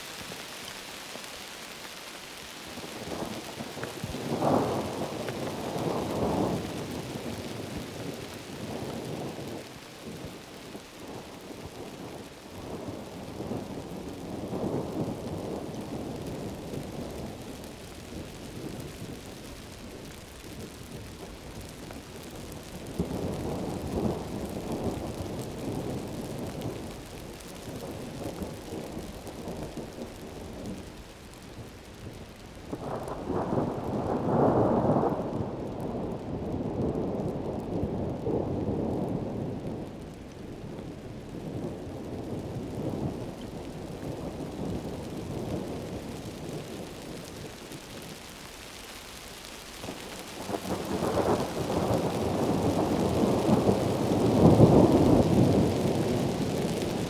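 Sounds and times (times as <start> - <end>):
heavy rain falling: 0.0 - 57.0
rolling thunder: 50.4 - 57.0.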